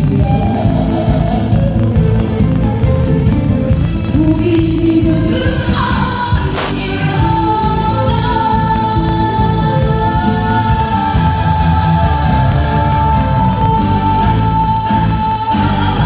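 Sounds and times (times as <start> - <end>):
backing track with drums: 0.0 - 15.8
woman singing: 4.0 - 16.0.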